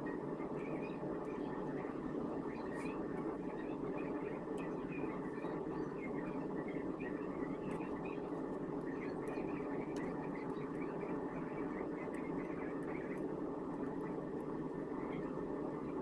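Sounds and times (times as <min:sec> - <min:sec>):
low background noise: 0:00.0 - 0:16.0
faint small clicks: 0:04.5 - 0:04.8, 0:07.6 - 0:14.2.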